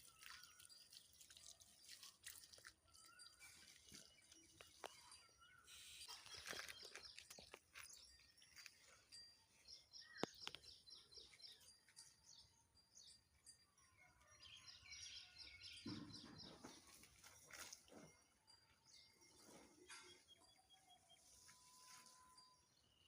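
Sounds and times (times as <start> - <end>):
small birds chirping: 0.0 - 17.7.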